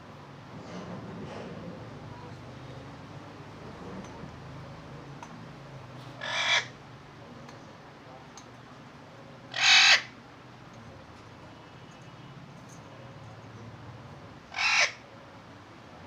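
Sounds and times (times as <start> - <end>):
parrot screeching: 6.2 - 6.8, 9.5 - 10.2, 14.5 - 15.0.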